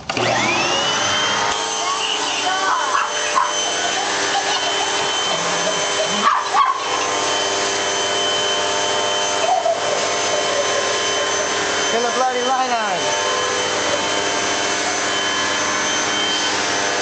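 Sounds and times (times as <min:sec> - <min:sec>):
vacuum cleaner whining: 0:00.0 - 0:17.0
dog high-pitched calls: 0:01.9 - 0:03.7, 0:06.1 - 0:07.2.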